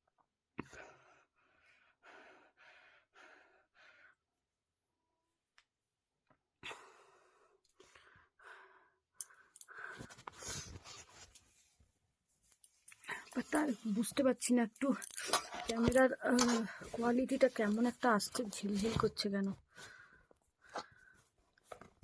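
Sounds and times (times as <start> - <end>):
woman breathing heavily through nose: 0.6 - 4.2, 6.6 - 10.8, 19.7 - 21.4.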